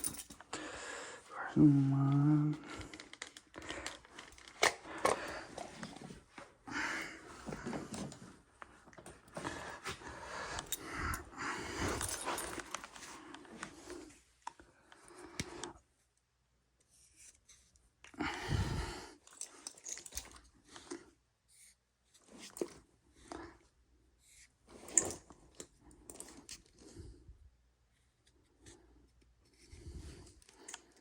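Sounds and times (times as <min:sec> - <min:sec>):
tools scraping and rustling: 0:09.0 - 0:14.1.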